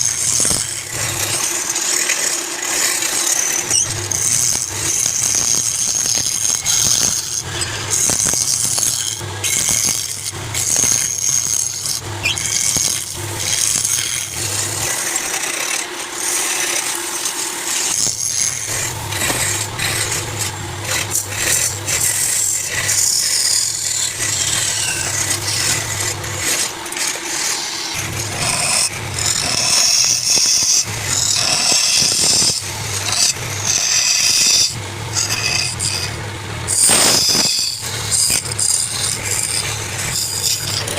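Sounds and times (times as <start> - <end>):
lathe motor hum: 0.0 - 40.9
turning tool scraping wood: 0.0 - 40.9.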